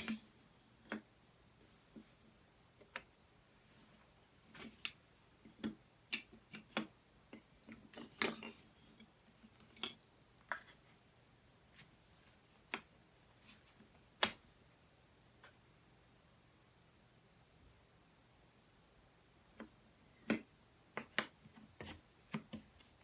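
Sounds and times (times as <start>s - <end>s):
wooden puzzle pieces clicking: 4.5s - 10.8s.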